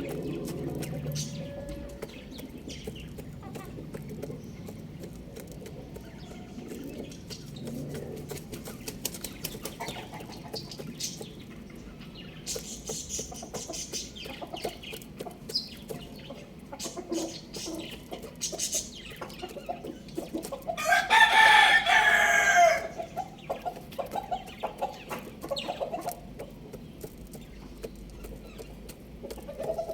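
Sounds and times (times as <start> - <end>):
small clicks and scratches: 0.0 - 11.6, 23.0 - 29.9
chickens clucking: 0.0 - 29.9
rooster crowing: 20.8 - 23.0.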